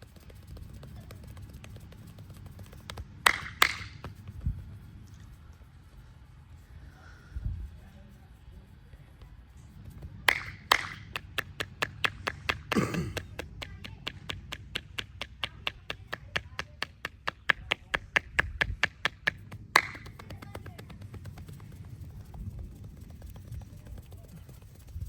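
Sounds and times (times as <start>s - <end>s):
hands slapping in massage: 0.4s - 4.3s, 10.0s - 21.9s.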